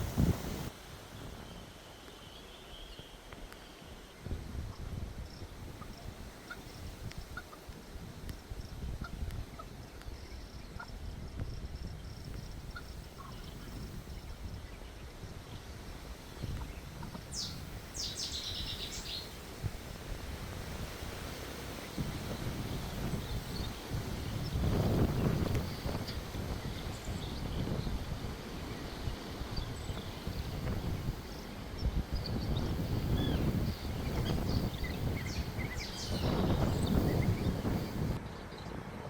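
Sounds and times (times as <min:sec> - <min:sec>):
wind rumbling on microphone: 0:00.0 - 0:01.8, 0:03.4 - 0:39.0
bird chirps: 0:17.3 - 0:19.4, 0:32.2 - 0:38.7
quick sweeping bird calls: 0:17.3 - 0:19.4.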